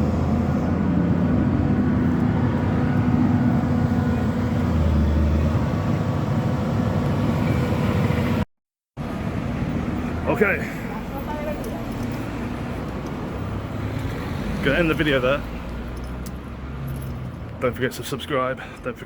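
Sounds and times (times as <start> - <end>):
engine droning: 0.0 - 8.4.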